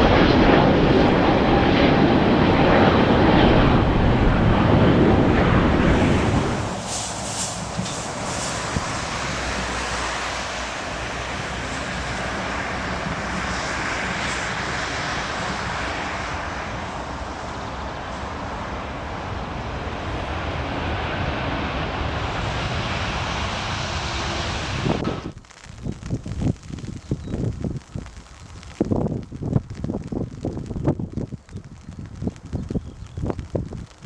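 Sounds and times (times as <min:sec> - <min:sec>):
jet engines running: 0:00.0 - 0:25.4.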